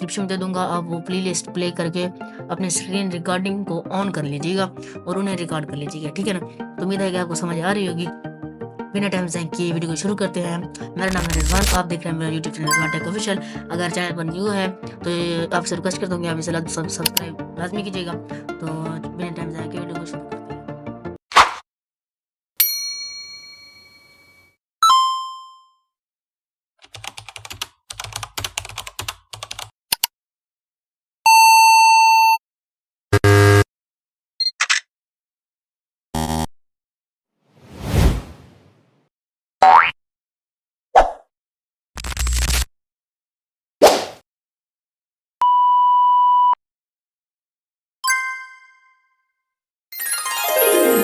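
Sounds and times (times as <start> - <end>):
computer keyboard typing: 11.1 - 11.8, 26.8 - 30.1
ringing ding: 22.6 - 25.8.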